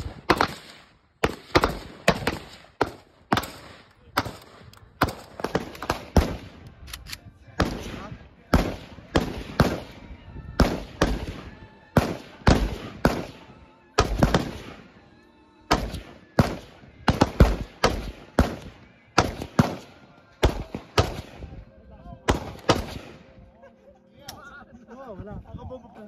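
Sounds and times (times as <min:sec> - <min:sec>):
gunshots with echo: 0:00.0 - 0:06.6, 0:07.6 - 0:10.0, 0:10.6 - 0:13.4, 0:14.0 - 0:14.8, 0:15.7 - 0:21.5, 0:22.3 - 0:23.2.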